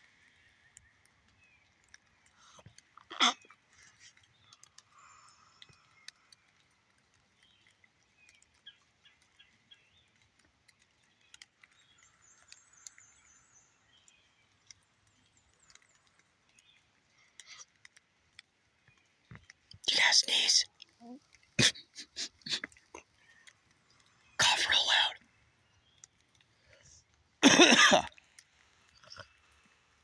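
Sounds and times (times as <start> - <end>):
light ticks: 0.0 - 19.9.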